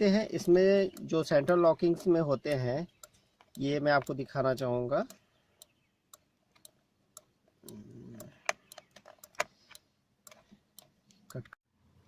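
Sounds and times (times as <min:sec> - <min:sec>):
plastic parts clicking: 0:08.4 - 0:10.9.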